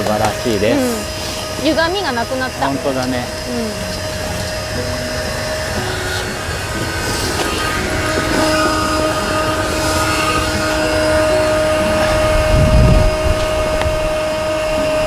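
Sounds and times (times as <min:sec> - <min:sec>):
steady high hum: 0:00.0 - 0:15.0
wind rushing over microphone: 0:00.0 - 0:15.0.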